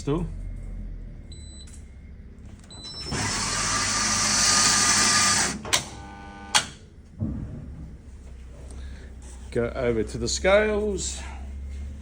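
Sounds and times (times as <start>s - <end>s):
coffee grinder running: 3.1s - 6.6s.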